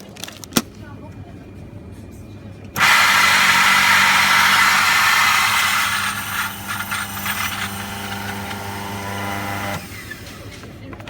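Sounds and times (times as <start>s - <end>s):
small electric motor humming: 2.8s - 10.7s.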